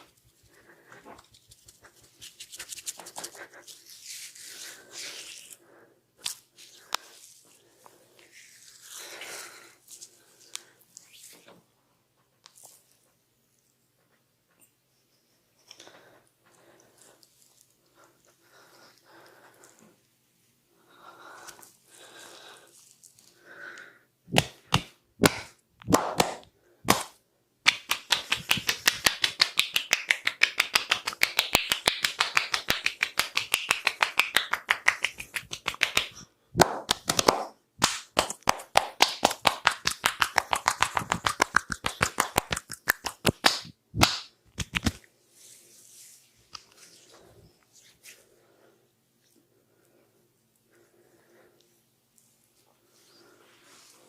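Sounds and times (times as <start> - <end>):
hands slapping in percussive massage: 0.0 - 3.6, 6.2 - 7.1, 24.3 - 45.1.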